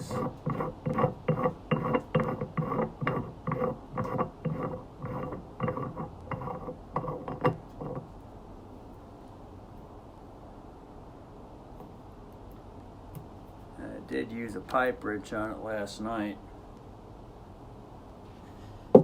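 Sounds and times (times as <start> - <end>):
valve threads squeaking: 0.0 - 8.1.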